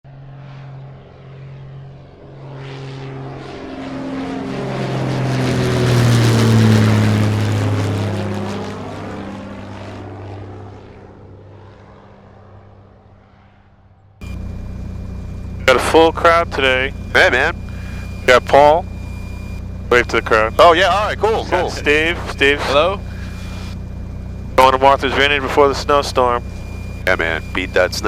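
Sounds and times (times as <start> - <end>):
propeller airplane flying past: 0.1 - 28.0.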